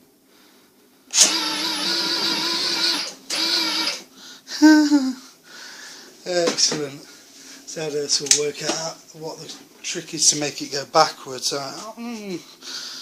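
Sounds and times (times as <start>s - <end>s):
small electric motor whining: 1.1s - 4.1s.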